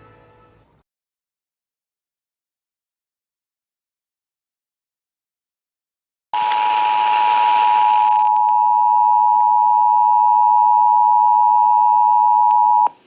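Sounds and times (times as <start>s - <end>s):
broadcast noise hiss: 6.4s - 8.8s, 11.8s - 13.0s.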